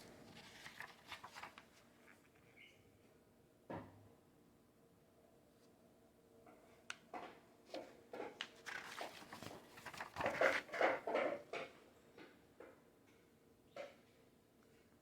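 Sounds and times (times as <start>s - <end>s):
paper pages rustling and flapping: 0.2s - 1.9s, 8.5s - 11.2s.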